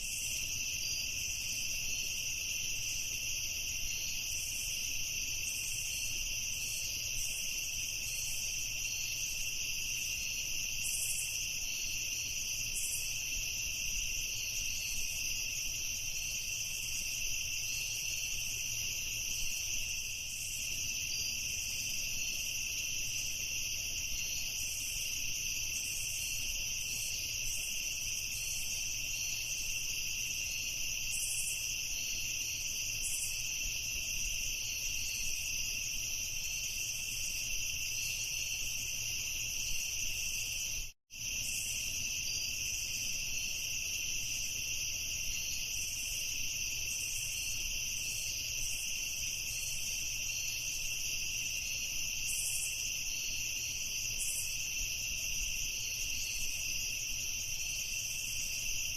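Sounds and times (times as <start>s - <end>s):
crickets trilling: 0.0s - 58.9s.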